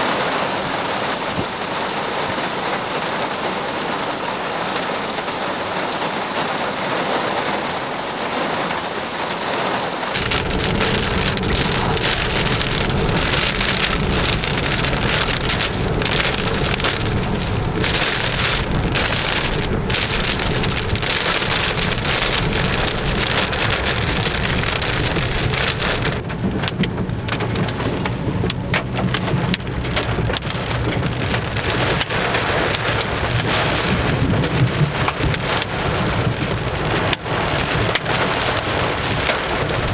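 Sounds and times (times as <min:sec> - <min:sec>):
heavy rain falling: 0:00.0 - 0:39.9
deep low rumble: 0:10.1 - 0:37.8.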